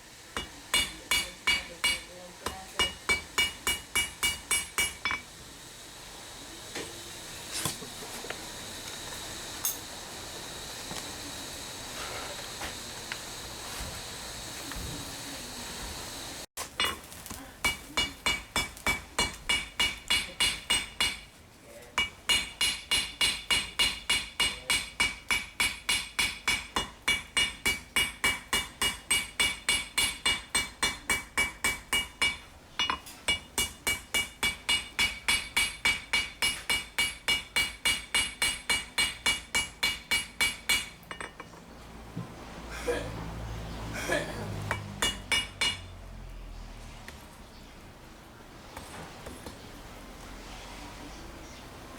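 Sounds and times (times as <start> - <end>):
steady hiss: 0.0 - 41.3
hammer ringing on anvil: 0.4 - 5.3, 22.0 - 41.5, 44.7 - 46.0.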